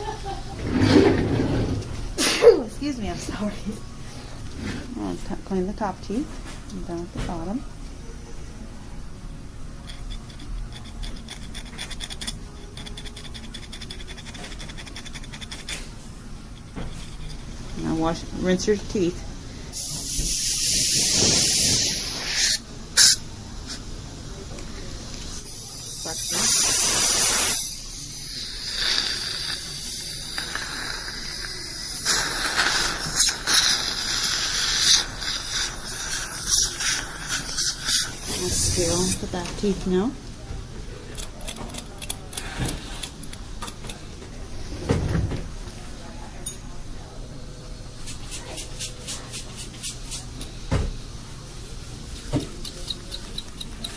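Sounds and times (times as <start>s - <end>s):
dental instrument scraping teeth: 9.8s - 15.9s, 16.6s - 18.2s, 28.3s - 39.3s, 41.1s - 44.0s, 52.6s - 53.9s
suction hissing: 19.7s - 23.8s, 25.4s - 39.3s
dental water spray: 19.8s - 23.8s, 25.4s - 39.3s.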